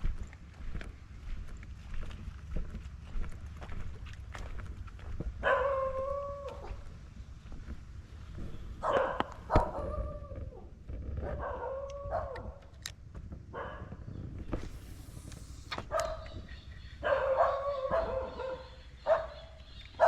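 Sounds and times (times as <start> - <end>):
dog howling: 5.5 - 6.9, 9.6 - 10.7, 11.3 - 12.6, 17.0 - 18.6.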